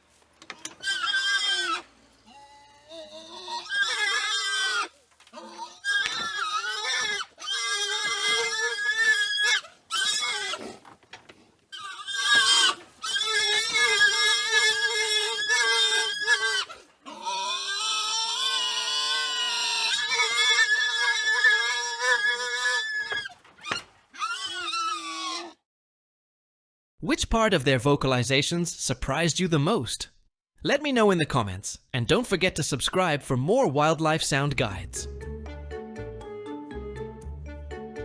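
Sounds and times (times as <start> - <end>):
wild boars squealing: 0.4 - 25.6.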